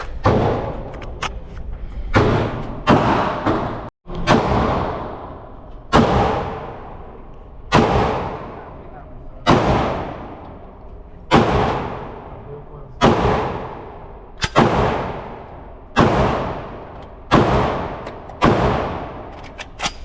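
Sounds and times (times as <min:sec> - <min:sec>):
gunshots echoing: 0:00.0 - 0:01.2, 0:02.1 - 0:10.7, 0:11.3 - 0:20.0.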